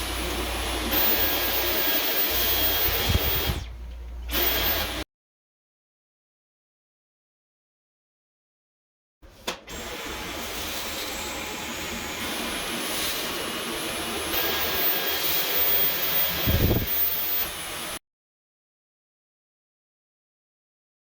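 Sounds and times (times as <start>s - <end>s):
cordless vacuum running: 0.0s - 5.0s, 9.6s - 18.0s.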